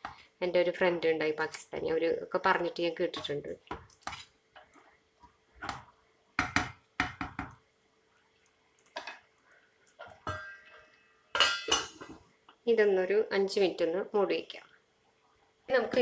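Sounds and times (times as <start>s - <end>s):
metal cookware knocks and clinks: 10.2s - 12.0s.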